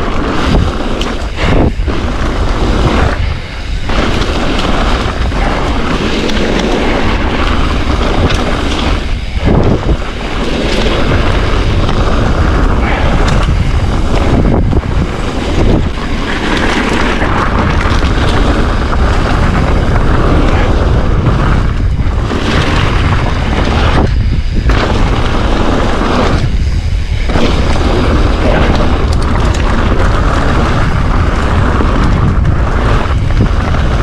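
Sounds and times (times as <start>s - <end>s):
bike tyres on gravel: 0.0s - 34.0s
wind buffeting microphone: 0.0s - 34.0s.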